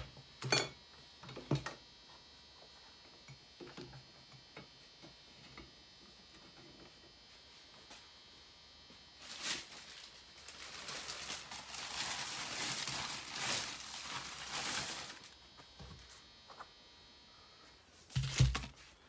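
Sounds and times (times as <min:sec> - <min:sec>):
rustling handling noise: 0:09.2 - 0:16.2, 0:18.0 - 0:19.0.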